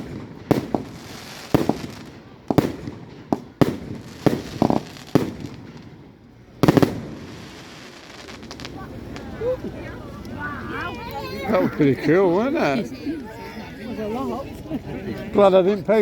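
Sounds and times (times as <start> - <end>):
fireworks bangs: 0.0 - 10.4.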